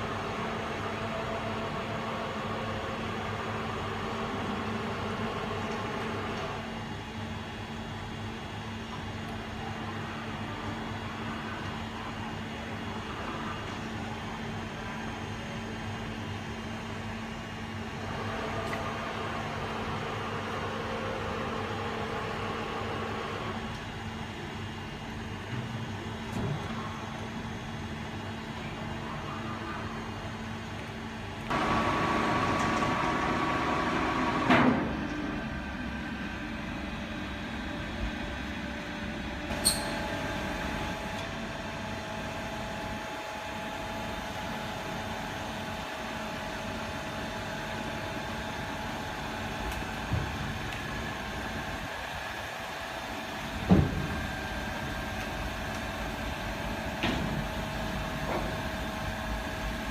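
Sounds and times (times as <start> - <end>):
electrical and hydraulic hum: 0.0 - 59.9
loud whine with mechanical noise: 0.0 - 59.9.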